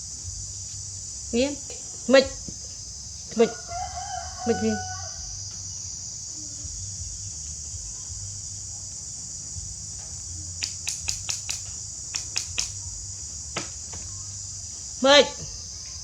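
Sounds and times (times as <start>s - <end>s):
insects chirring: 0.0s - 16.0s
sharp clicks: 10.6s - 12.9s.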